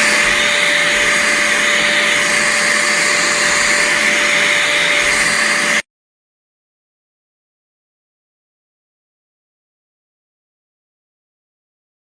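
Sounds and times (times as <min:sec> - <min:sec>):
upright vacuum cleaner running: 0:00.0 - 0:05.8.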